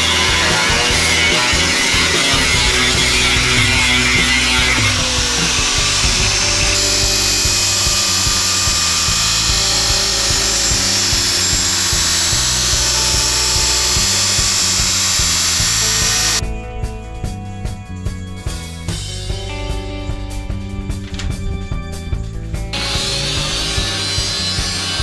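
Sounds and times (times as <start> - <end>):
power tool working on steel: 0.0 - 16.4, 22.8 - 25.0
background music with low beat: 0.0 - 25.0.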